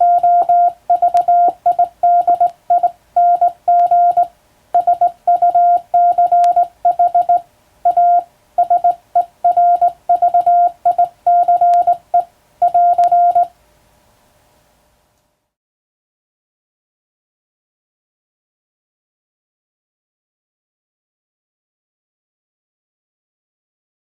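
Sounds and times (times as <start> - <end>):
morse code beeps: 0.0 - 13.5.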